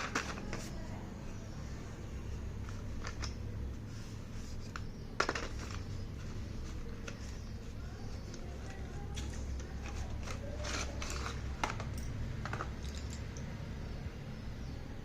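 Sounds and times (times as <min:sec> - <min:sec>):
packaging clicks and crackles: 0:00.0 - 0:00.8, 0:04.7 - 0:13.4
low steady hum: 0:00.0 - 0:15.0.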